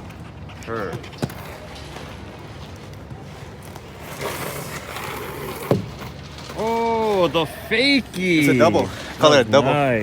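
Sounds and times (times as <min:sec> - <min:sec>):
skate wheels rolling on pavement: 0:00.0 - 0:10.0
skate landing clack: 0:04.0 - 0:06.7.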